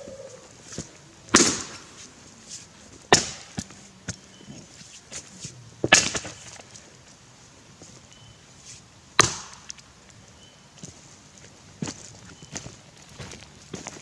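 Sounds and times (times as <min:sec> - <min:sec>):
axe chopping into log: 0:01.3 - 0:01.9, 0:03.1 - 0:03.6, 0:09.2 - 0:09.7.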